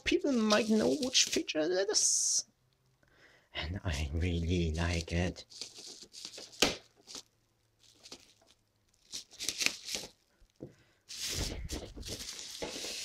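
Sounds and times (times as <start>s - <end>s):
cardboard tearing: 0.2s - 1.4s, 4.9s - 10.2s, 11.1s - 13.0s
cardboard box rustling: 11.1s - 13.0s.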